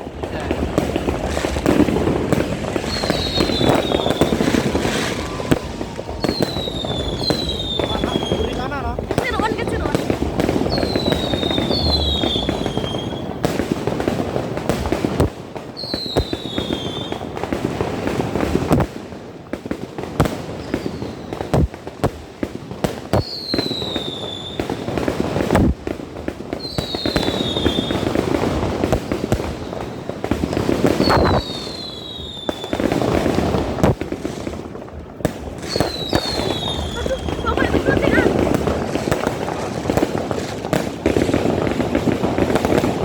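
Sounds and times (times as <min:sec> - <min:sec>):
falling firework whistle: 0:00.0 - 0:13.6, 0:14.8 - 0:17.4, 0:20.5 - 0:21.7, 0:23.1 - 0:25.8, 0:26.6 - 0:34.1, 0:35.6 - 0:39.7
firework bangs: 0:00.0 - 0:43.0
fireworks crackling: 0:00.0 - 0:43.0.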